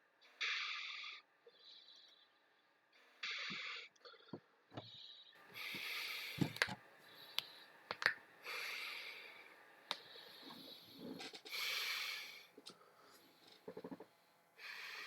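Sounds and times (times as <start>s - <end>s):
person breathing heavily: 5.4s - 7.8s, 8.4s - 15.0s.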